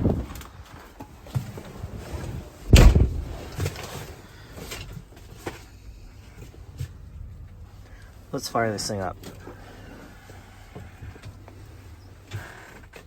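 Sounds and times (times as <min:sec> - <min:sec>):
truck door slamming: 0:02.7 - 0:03.8
clicks and knocks in cab: 0:02.7 - 0:04.0.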